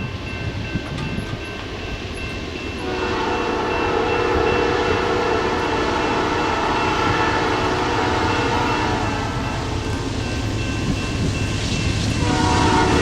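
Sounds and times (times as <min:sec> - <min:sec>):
moving train rumble: 0:00.0 - 0:13.0
locomotive air horn chord: 0:02.8 - 0:09.8, 0:12.2 - 0:13.0.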